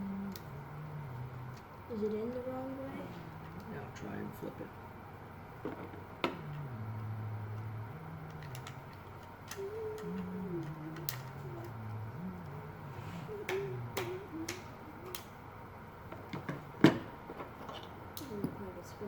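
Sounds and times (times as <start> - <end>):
slow tape playback drone: 0.0 - 16.7
mechanism clicks: 6.2 - 11.8.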